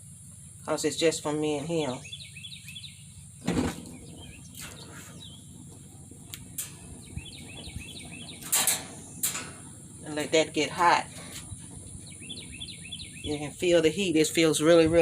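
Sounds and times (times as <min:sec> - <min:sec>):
birds chirping: 0:00.0 - 0:15.0
gas burner igniting burst: 0:03.4 - 0:13.9
igniter clicks: 0:03.7 - 0:13.9.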